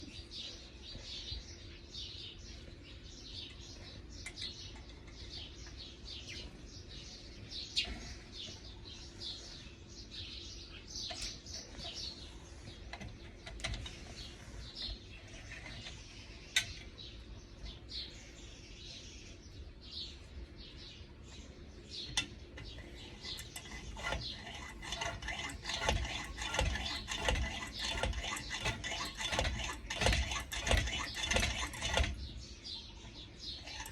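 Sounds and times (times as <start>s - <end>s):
small birds chirping: 0.0s - 33.9s
clinking and knocking: 23.6s - 32.2s.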